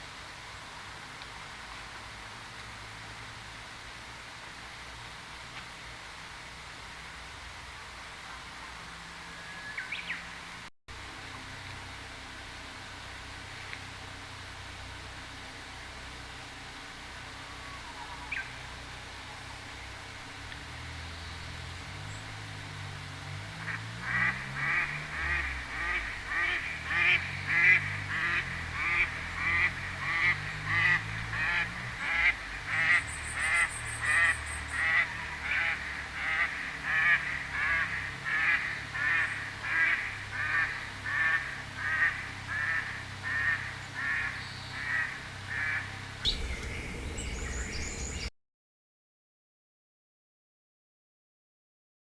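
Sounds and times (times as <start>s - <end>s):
bird honking call: 45.6s - 48.3s.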